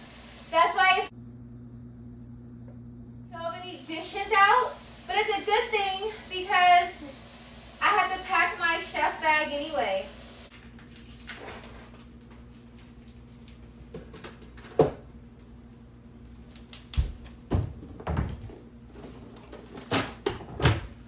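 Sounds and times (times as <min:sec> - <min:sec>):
kitchen knocks and thumps: 0:13.9 - 0:15.1, 0:16.9 - 0:21.0.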